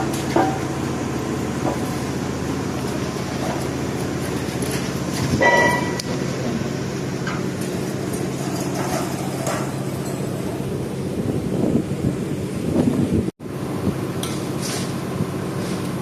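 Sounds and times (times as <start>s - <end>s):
machine humming: 0.0s - 14.3s
short metallic clink: 5.4s - 6.1s.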